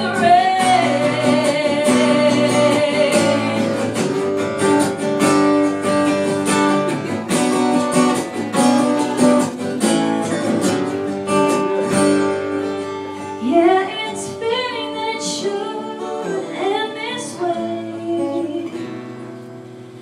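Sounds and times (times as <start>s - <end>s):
person singing: 0.0s - 4.4s, 13.0s - 19.0s
acoustic guitar strumming: 0.0s - 20.0s.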